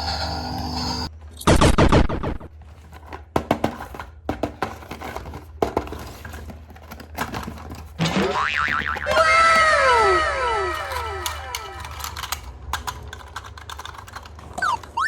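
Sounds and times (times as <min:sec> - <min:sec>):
plastic toy pieces clattering: 0:02.6 - 0:15.0.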